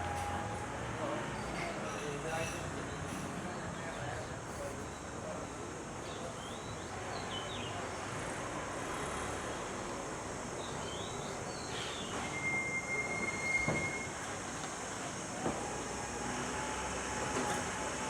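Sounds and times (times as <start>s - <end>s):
street traffic: 0.0s - 18.0s.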